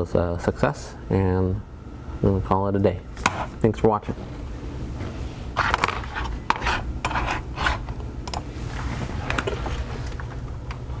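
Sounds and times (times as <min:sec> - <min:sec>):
steady low hum: 0:00.0 - 0:11.0
objects scraping on work surface: 0:05.0 - 0:07.9.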